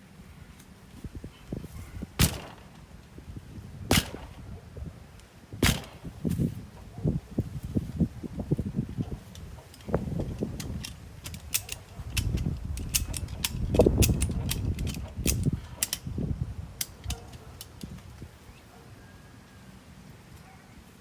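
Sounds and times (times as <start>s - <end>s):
ratchet strap clicking: 9.3s - 16.1s, 16.8s - 18.3s.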